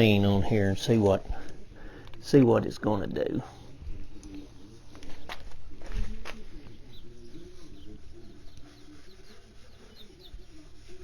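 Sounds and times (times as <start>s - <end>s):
birds chirping and cooing: 3.2s - 11.0s.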